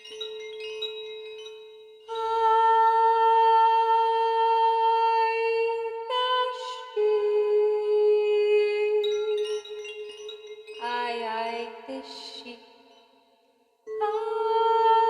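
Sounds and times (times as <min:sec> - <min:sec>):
soft meditative music: 0:00.0 - 0:15.0
long held humming notes: 0:02.0 - 0:12.6.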